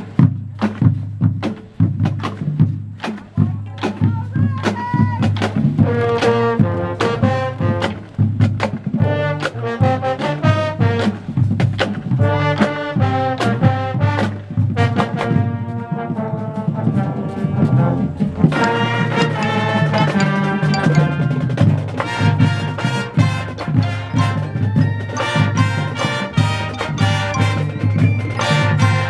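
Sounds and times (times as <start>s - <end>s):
marching drums: 0.0s - 29.0s
brass section playing: 5.8s - 8.2s, 9.0s - 11.4s, 12.2s - 29.0s.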